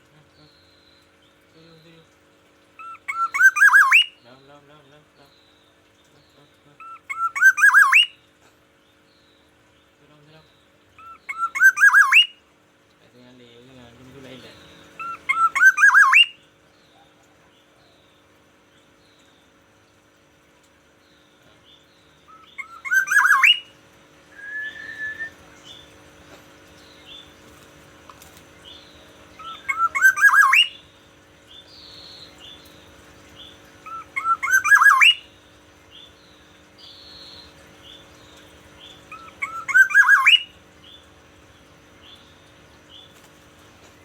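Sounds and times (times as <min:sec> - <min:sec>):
bird calling rising notes: 0:02.8 - 0:04.2, 0:06.8 - 0:08.2, 0:11.0 - 0:12.4, 0:14.5 - 0:16.4, 0:22.3 - 0:26.0, 0:28.6 - 0:31.0, 0:33.3 - 0:36.2, 0:38.8 - 0:41.0
drawn-out bird whistle: 0:02.8 - 0:04.2, 0:06.8 - 0:08.2, 0:11.0 - 0:12.4, 0:14.6 - 0:16.4, 0:22.3 - 0:25.9, 0:28.8 - 0:30.9, 0:33.8 - 0:36.2, 0:39.0 - 0:40.6.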